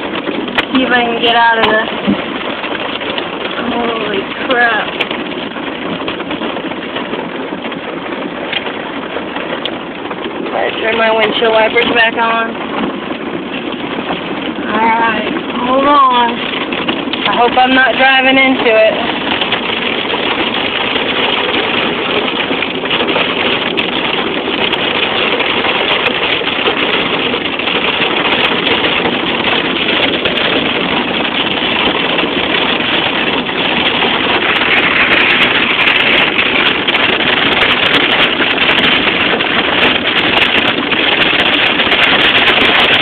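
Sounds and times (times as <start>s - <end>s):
hail and rain on car roof: 0.0s - 43.0s.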